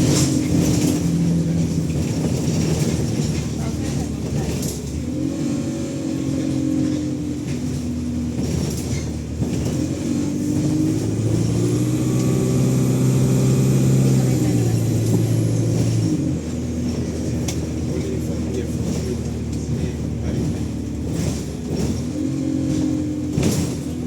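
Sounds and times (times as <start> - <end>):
bus diesel engine accelerating: 0.0 - 24.0
high turbo whine: 9.8 - 16.5.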